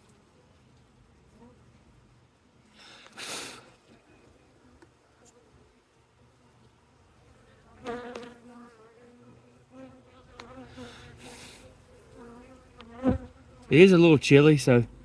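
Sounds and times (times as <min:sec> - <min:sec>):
bees buzzing: 0:09.8 - 0:14.2.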